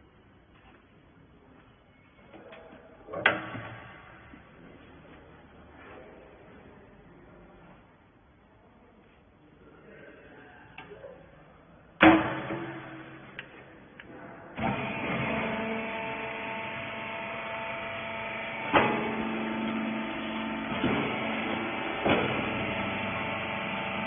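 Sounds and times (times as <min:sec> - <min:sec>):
hydraulic power unit humming: 0:12.0 - 0:24.0.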